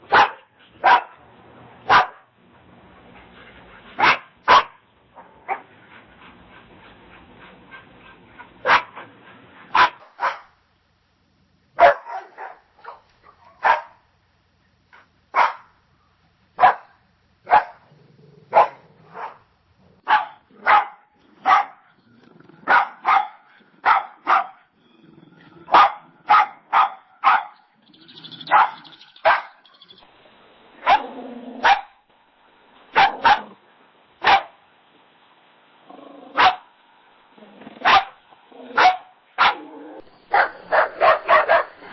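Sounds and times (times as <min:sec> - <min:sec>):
dog barking: 0:00.0 - 0:01.2, 0:01.9 - 0:02.3, 0:04.0 - 0:05.7, 0:08.6 - 0:09.1, 0:09.7 - 0:10.6, 0:11.8 - 0:14.0, 0:15.3 - 0:15.7, 0:16.6 - 0:17.9, 0:18.5 - 0:21.9, 0:22.6 - 0:24.7, 0:25.7 - 0:27.7, 0:28.5 - 0:29.7, 0:30.8 - 0:32.0, 0:32.9 - 0:33.6, 0:34.2 - 0:34.6, 0:36.3 - 0:36.7, 0:37.8 - 0:39.6, 0:40.3 - 0:41.9.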